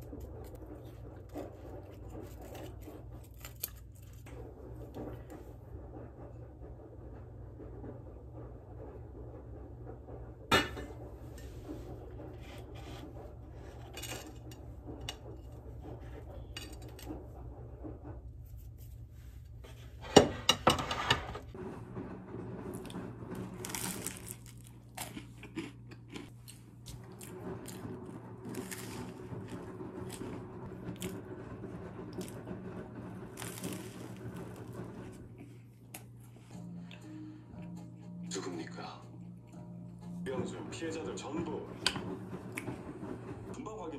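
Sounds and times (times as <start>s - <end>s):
kitchenware clinks and scrapes: 0.0s - 5.6s, 10.5s - 19.0s, 19.6s - 24.6s
kitchenware clattering: 10.5s - 18.1s, 19.8s - 23.8s.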